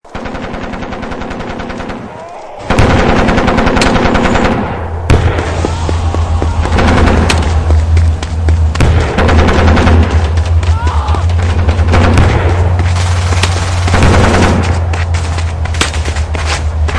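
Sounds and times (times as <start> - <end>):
machine-gun fire: 0.1 - 5.6, 6.6 - 7.9, 8.6 - 10.6, 11.3 - 14.9
heavy gunfire: 0.1 - 15.0
deep steady rumble: 2.7 - 16.9
explosion blast: 4.6 - 7.9.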